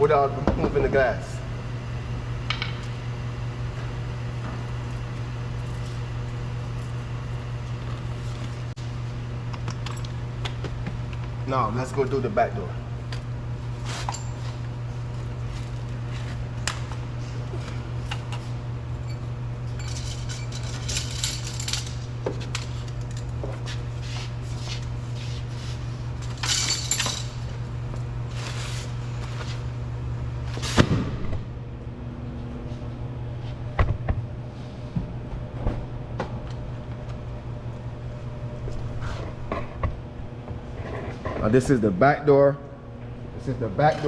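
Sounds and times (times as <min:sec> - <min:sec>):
steady low hum: 0:00.0 - 0:44.0
tools clinking and rustling: 0:19.0 - 0:23.3, 0:26.2 - 0:27.5.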